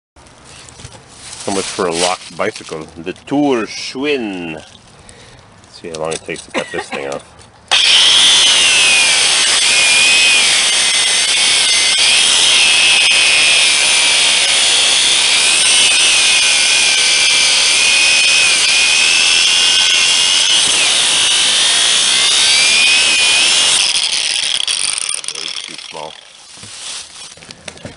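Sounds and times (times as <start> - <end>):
angle grinder cutting steel: 7.7 - 26.5.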